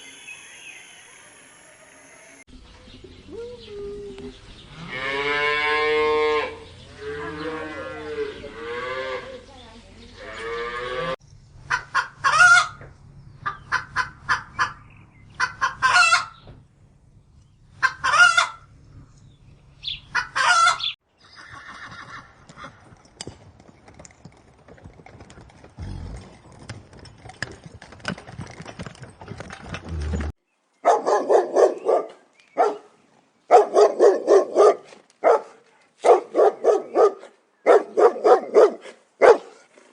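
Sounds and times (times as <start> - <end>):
cow mooing: 10.2 - 11.2
chicken calling: 11.7 - 12.8, 13.4 - 16.4, 17.8 - 18.7, 19.9 - 22.8
dog barking: 30.8 - 32.9, 33.5 - 39.6.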